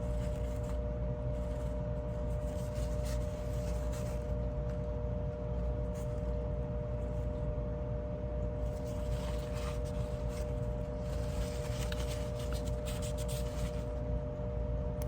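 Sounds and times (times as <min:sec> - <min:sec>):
electrical hum: 0:00.0 - 0:15.0.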